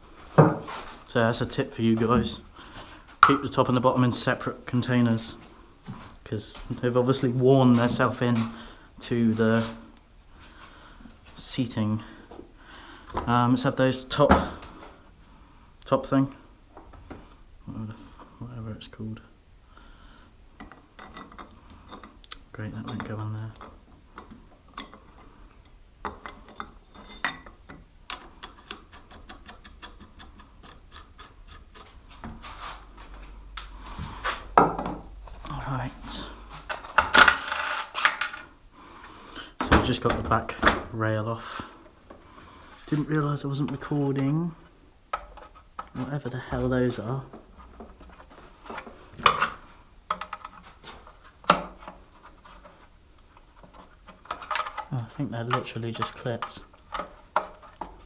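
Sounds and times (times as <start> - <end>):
metal parts scraping and clicking: 36.7 - 38.4.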